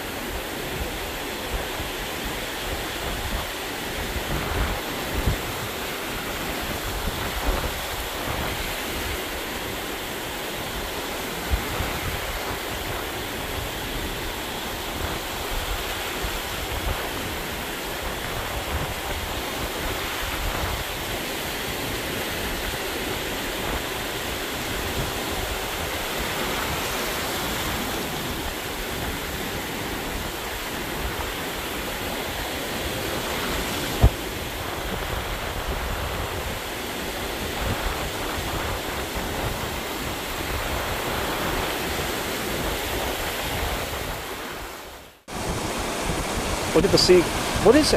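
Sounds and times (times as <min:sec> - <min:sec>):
wind buffeting microphone: 0:00.0 - 0:47.8
ocean surf washing in: 0:00.0 - 0:47.9.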